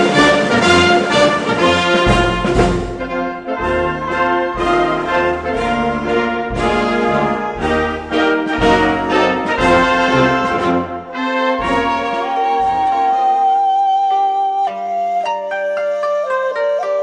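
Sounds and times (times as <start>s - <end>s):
orchestral brass chords: 0.0s - 14.0s
low bass notes: 2.1s - 13.2s.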